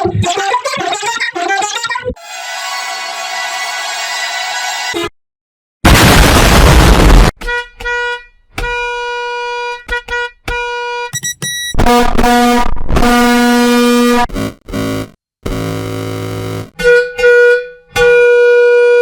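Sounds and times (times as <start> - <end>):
harsh noise blast: 5.8 - 7.4
bus air horn honks: 7.4 - 15.0, 15.6 - 19.0
quick high beeps: 11.2 - 11.8.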